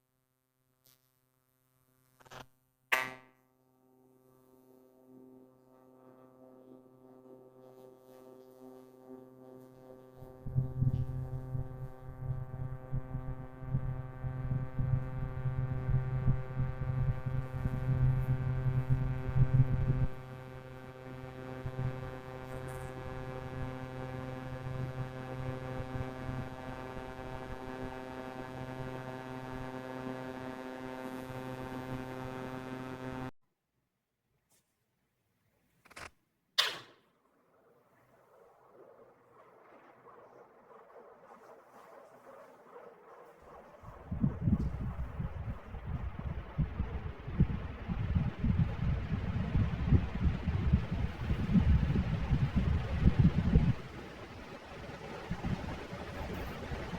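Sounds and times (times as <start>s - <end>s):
ceiling fan hum: 39.6s - 56.9s.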